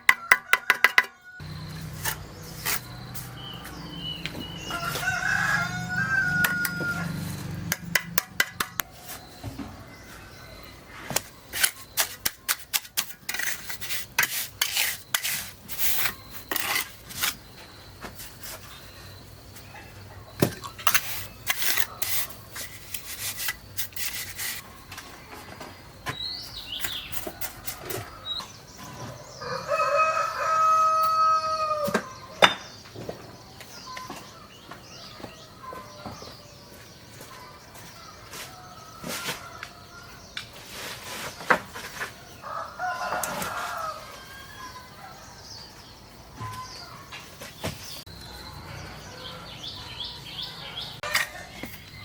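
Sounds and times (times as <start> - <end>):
rooster crowing: 4.6 - 7.5, 29.4 - 31.9, 42.4 - 45.2
sharp clicks and knocks: 7.7 - 8.9.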